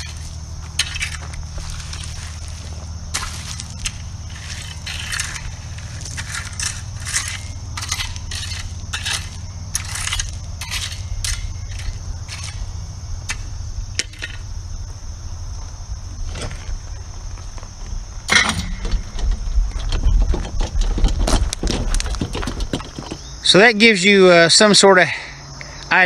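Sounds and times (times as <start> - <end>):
steady low hum: 0.0 - 23.8
gravel crunching and scraping: 0.0 - 26.0.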